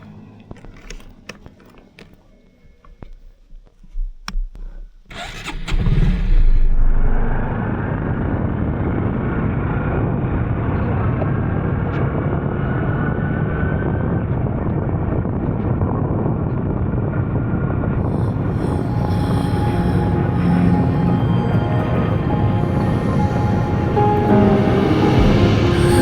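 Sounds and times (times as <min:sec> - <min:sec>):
road noise: 0:18.0 - 0:26.0.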